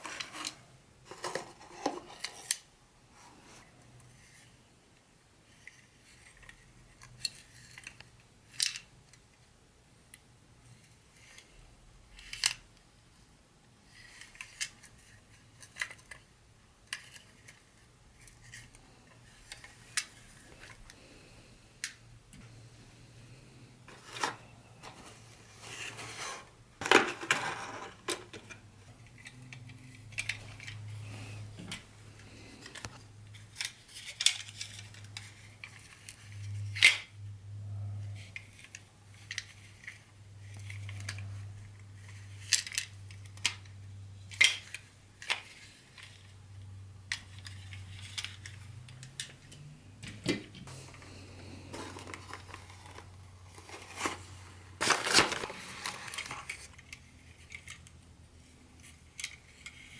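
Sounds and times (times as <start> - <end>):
rustling: 50.7 - 56.8.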